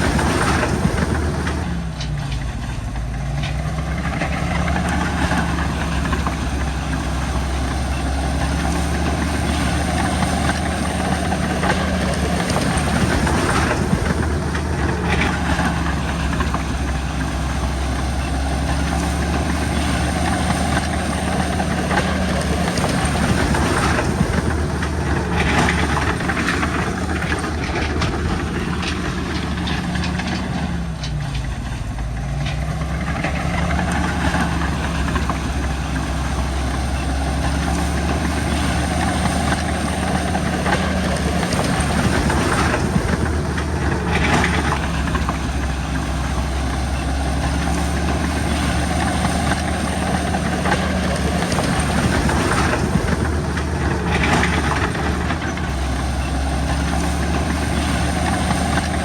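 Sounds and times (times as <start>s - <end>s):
bulldozer diesel engine: 0.0s - 59.0s
steel tracks clanking: 0.0s - 59.0s.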